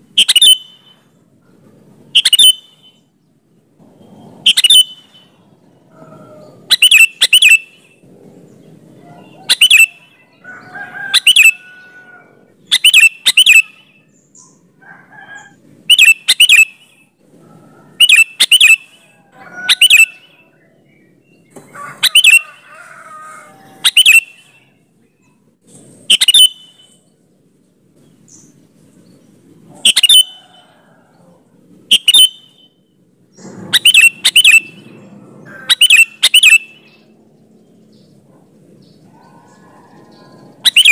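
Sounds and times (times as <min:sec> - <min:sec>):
soft bird chattering: 0:00.1 - 0:01.1, 0:02.1 - 0:03.0, 0:04.4 - 0:08.0, 0:09.2 - 0:10.1, 0:12.6 - 0:14.7, 0:15.4 - 0:17.1, 0:17.9 - 0:20.4, 0:23.7 - 0:27.0, 0:28.0 - 0:37.1, 0:37.9 - 0:40.9
bulbul singing sharp notes: 0:31.9 - 0:35.0, 0:35.8 - 0:37.2.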